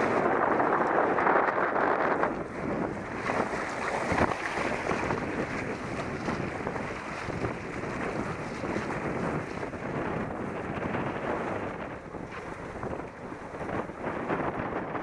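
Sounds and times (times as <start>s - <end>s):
water rushing past boat: 0.0s - 15.0s
wind buffeting microphone: 0.0s - 15.0s.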